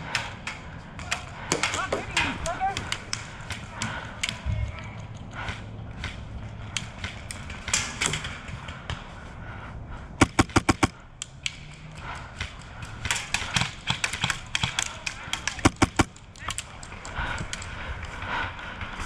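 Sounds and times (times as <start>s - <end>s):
airsoft gun rapid burst: 10.2s - 10.9s, 15.6s - 16.1s
sharp clicks and snaps: 10.2s - 12.2s.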